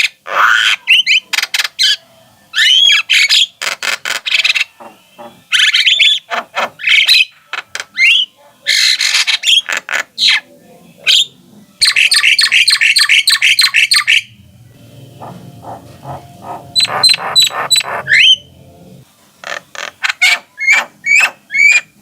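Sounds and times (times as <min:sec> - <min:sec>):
birds singing harsh whistled song: 0:02.6 - 0:03.6, 0:05.5 - 0:07.4, 0:11.1 - 0:14.3, 0:16.8 - 0:18.5, 0:20.0 - 0:21.9.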